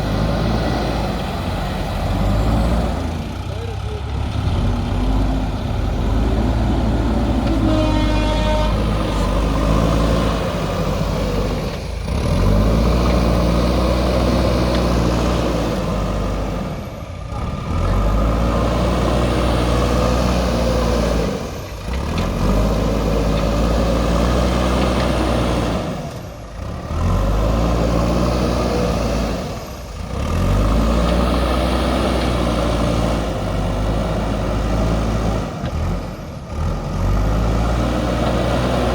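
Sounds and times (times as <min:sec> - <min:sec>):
backhoe diesel engine revving: 0:00.0 - 0:38.9.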